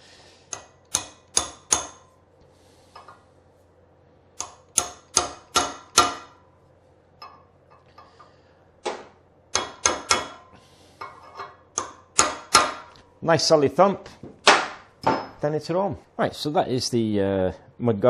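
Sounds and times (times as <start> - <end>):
hammer tapping metal part: 0.5 - 2.1, 4.4 - 6.4, 8.9 - 13.0.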